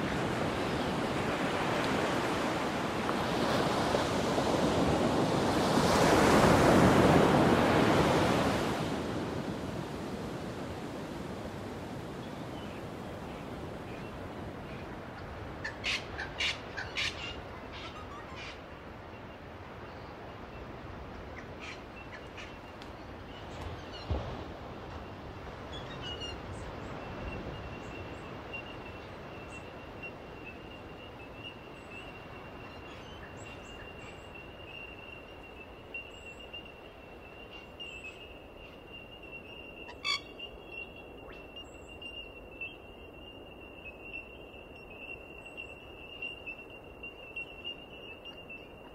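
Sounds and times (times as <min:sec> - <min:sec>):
steady open-air hiss: 0:00.0 - 0:48.9
sharp bird calls: 0:29.5 - 0:48.9.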